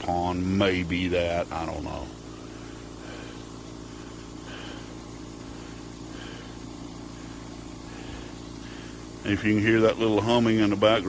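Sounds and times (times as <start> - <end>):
air compressor humming: 0.0 - 11.0.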